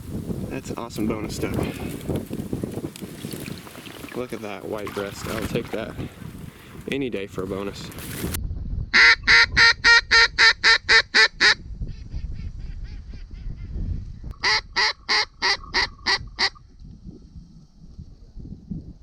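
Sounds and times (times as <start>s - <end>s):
duck call quacks: 9.0s - 11.6s, 14.4s - 16.6s.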